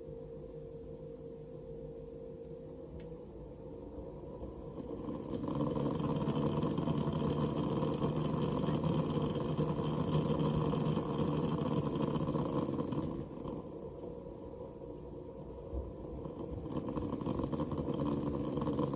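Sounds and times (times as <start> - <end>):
water pump buzzing rattle: 4.4 - 14.0, 15.7 - 18.9.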